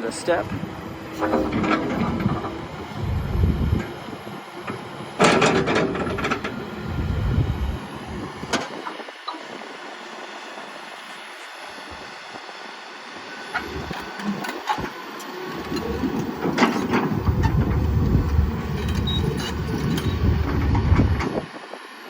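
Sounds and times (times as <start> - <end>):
excavator engine rumbling: 0.0 - 21.7
metal clanks and rattles: 1.2 - 3.9, 4.7 - 6.6, 15.7 - 21.4.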